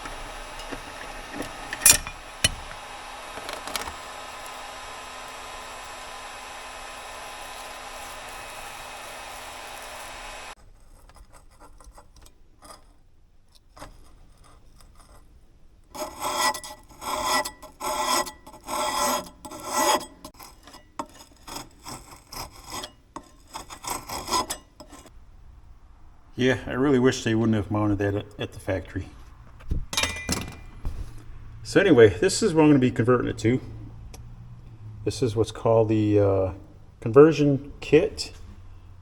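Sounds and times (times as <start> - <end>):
electric hum: 0.0 - 10.6
rasping scrapes of sanding disc: 0.0 - 12.9, 15.9 - 25.1.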